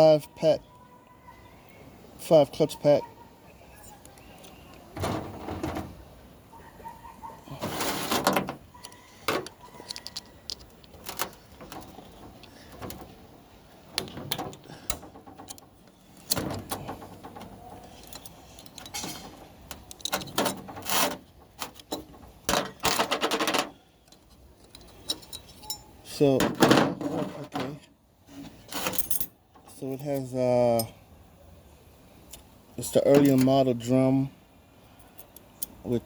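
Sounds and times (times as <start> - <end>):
metal scraping: 7.5 - 13.3, 14.0 - 23.8
metal parts clinking: 7.6 - 13.2, 14.0 - 26.1, 28.7 - 30.9.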